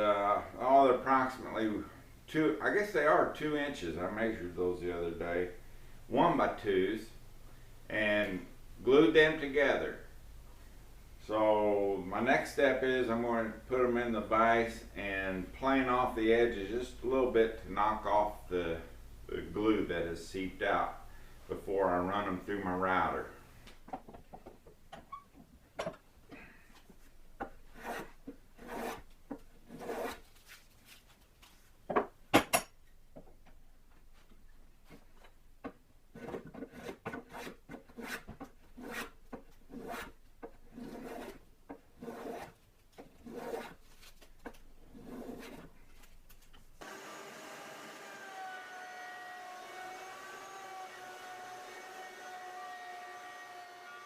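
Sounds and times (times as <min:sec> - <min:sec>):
hand plane strokes on wood: 0:27.4 - 0:30.2, 0:36.1 - 0:41.4, 0:42.0 - 0:43.8, 0:44.9 - 0:45.7
electric motor hum: 0:46.8 - 0:54.0.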